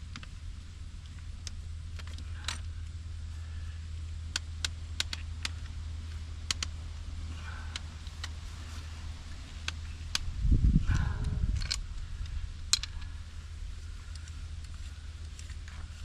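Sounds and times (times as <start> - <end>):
engine idling hum: 0.0 - 16.0
sharp clicks and ticks: 4.1 - 6.8, 10.9 - 13.1.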